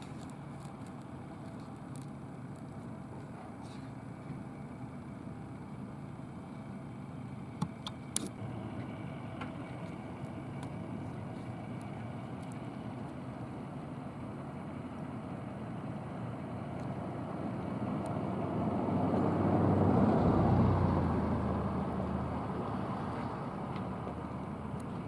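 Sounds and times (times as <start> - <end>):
vehicle engine rumble passing: 8.4 - 25.0.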